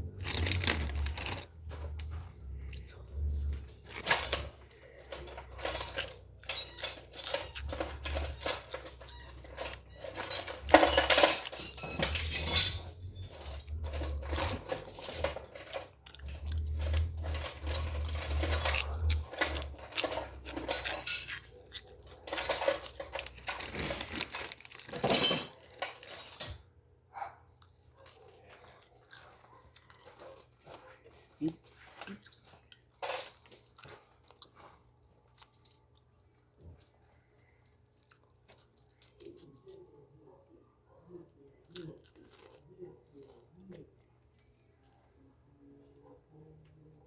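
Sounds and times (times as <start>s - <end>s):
metal tools clinking and clattering: 0.0s - 26.7s, 29.2s - 30.8s, 31.8s - 34.0s.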